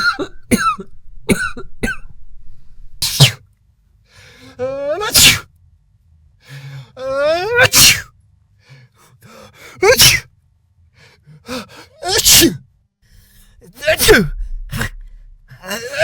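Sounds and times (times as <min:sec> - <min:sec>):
person sneezing: 0:03.0 - 0:03.4, 0:05.1 - 0:05.4, 0:07.6 - 0:08.1, 0:09.9 - 0:10.3, 0:12.0 - 0:12.6.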